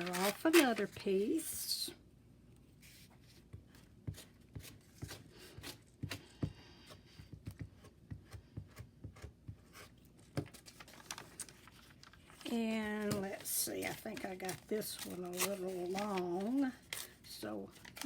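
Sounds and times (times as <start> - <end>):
paper rustling: 0.0 - 1.4, 10.4 - 18.0.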